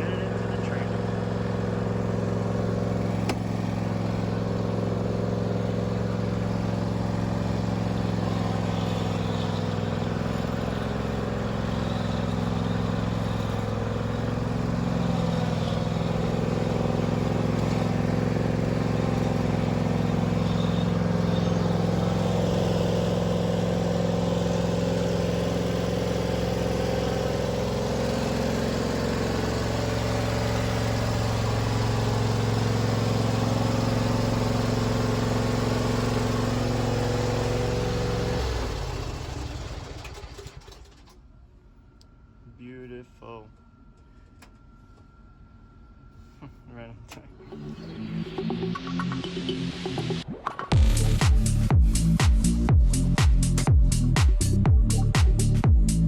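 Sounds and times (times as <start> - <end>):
lawn mower engine running: 0.0 - 41.2.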